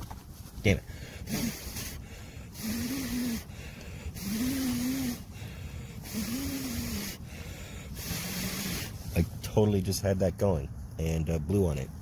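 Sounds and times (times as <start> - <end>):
low voiced hum: 0.7 - 11.8
person blowing on embers: 0.9 - 9.2.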